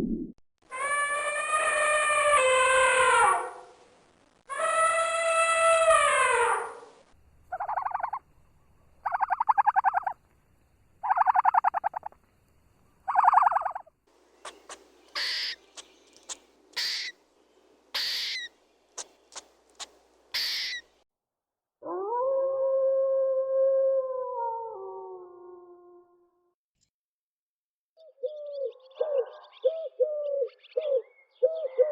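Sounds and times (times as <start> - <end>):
long howl-like call: 0.7 - 3.8, 4.5 - 6.9, 21.8 - 26.2
rasping animal calls: 14.4 - 17.1
short sharp high-pitched calls: 16.8 - 17.2, 18.0 - 20.9.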